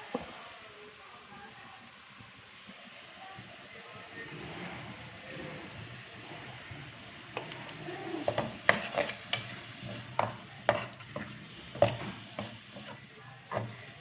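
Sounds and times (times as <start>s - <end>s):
liver sizzling in a pan: 0.0s - 14.0s
spoon scraping a pan: 7.2s - 14.0s.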